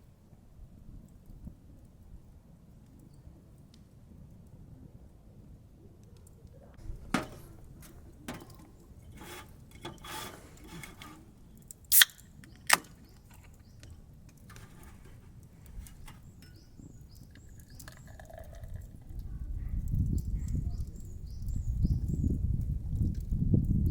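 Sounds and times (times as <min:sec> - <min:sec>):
objects being handled: 0:06.8 - 0:18.4
sharp loud clicks: 0:11.9 - 0:13.9.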